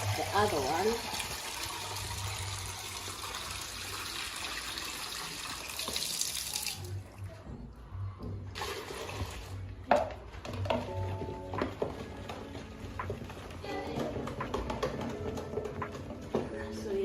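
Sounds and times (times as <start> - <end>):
water pouring into a bucket: 0.0 - 7.0, 8.5 - 9.6.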